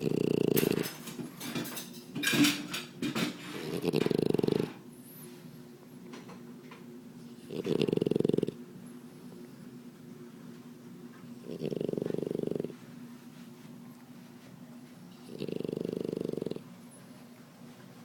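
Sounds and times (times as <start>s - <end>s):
dog snoring: 0.0s - 1.2s, 3.3s - 4.8s, 7.3s - 8.6s, 11.4s - 12.8s, 15.1s - 16.7s.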